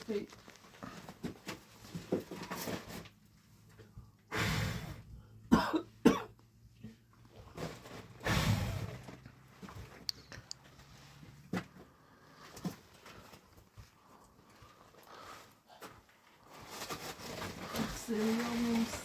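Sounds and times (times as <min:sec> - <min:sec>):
person coughing: 0:05.5 - 0:06.3.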